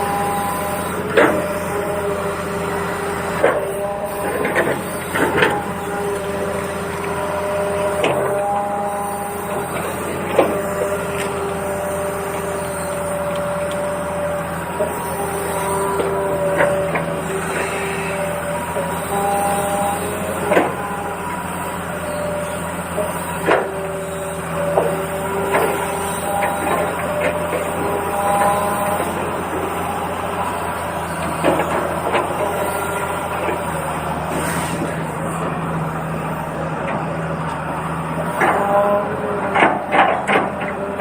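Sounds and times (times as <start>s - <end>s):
small electric motors whirring: 0.0s - 41.0s.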